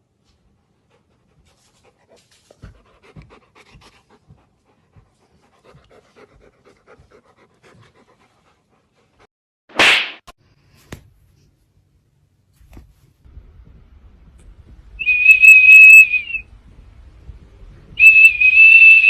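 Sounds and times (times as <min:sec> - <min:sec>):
dog panting: 0:00.4 - 0:09.3.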